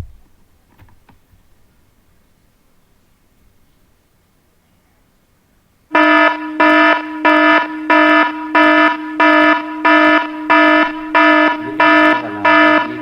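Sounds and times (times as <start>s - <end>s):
electronic alarm tone pulsing: 5.9s - 13.0s.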